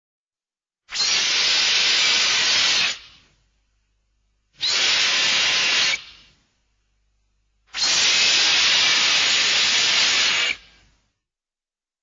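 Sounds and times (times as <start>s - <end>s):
steam-like hiss: 0.9s - 3.3s, 4.6s - 6.4s, 7.7s - 10.9s.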